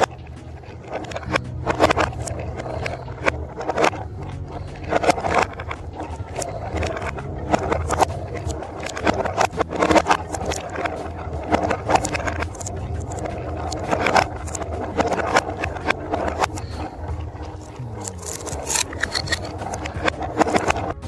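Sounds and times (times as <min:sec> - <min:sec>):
marbles clicking against track: 0:00.0 - 0:21.0
marbles rolling on plastic track: 0:00.0 - 0:21.0.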